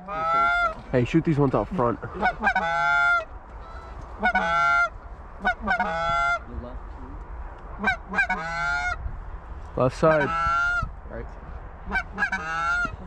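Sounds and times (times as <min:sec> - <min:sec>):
goose honking: 0:00.0 - 0:01.0, 0:01.8 - 0:06.5, 0:07.8 - 0:09.0, 0:10.0 - 0:10.9, 0:11.9 - 0:13.0.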